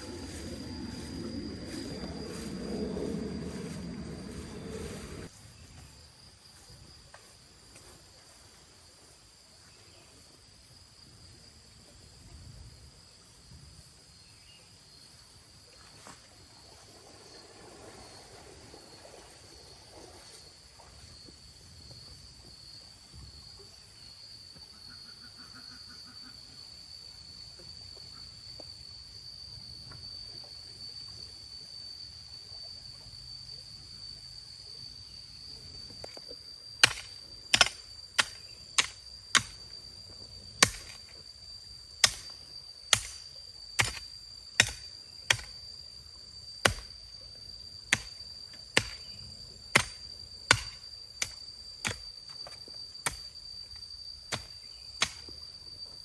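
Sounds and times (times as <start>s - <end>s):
high-pitched insect drone: 0.0s - 5.4s
sharp chopping strikes: 36.8s - 39.6s, 40.6s - 41.0s, 42.0s - 42.3s, 42.9s - 43.2s, 43.8s - 45.5s, 46.6s - 46.9s, 48.8s - 49.0s, 49.8s - 52.0s, 54.3s - 55.2s.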